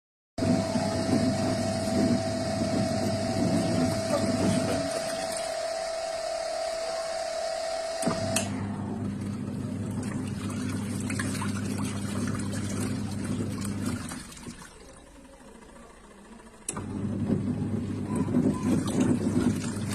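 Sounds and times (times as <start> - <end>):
high steady whine: 0.4 - 11.2
washing machine motor hum: 0.4 - 19.9
click: 8.0 - 8.5, 16.6 - 16.9.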